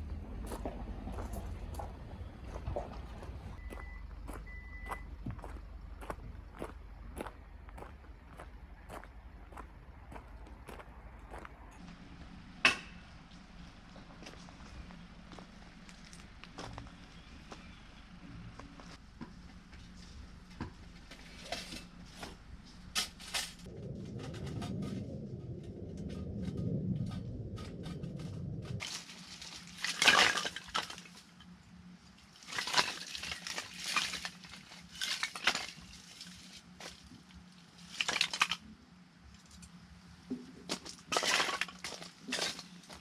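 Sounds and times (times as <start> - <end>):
low rumble: 0.0 - 19.0, 23.6 - 28.8.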